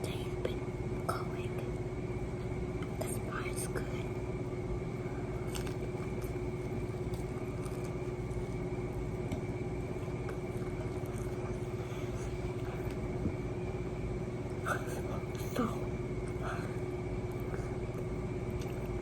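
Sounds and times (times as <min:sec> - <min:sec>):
low background hum: 0:00.0 - 0:19.0
chewing fried food: 0:05.3 - 0:13.3, 0:17.3 - 0:19.0.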